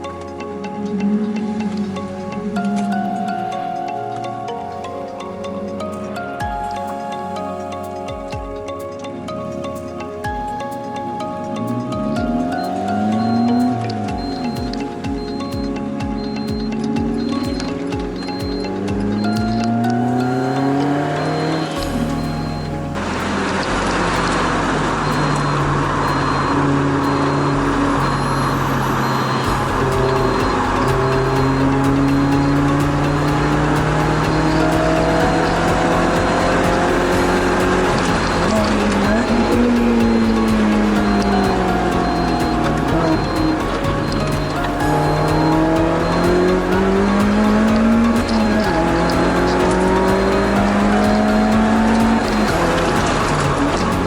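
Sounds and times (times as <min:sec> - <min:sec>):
background music: 0:00.0 - 0:54.0
road and wind noise: 0:00.0 - 0:54.0
car engine at speed: 0:10.2 - 0:54.0.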